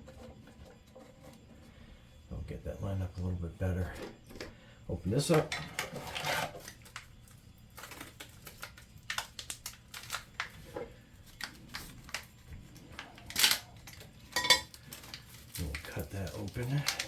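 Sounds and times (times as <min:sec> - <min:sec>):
packaging rustle: 0:05.2 - 0:17.0
plastic packaging clicks and crackles: 0:06.6 - 0:17.0.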